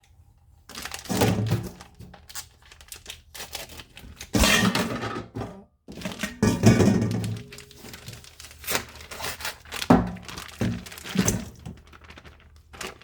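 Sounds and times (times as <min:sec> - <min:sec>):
clattering knocks and crunching: 0:04.4 - 0:09.0, 0:09.7 - 0:13.0.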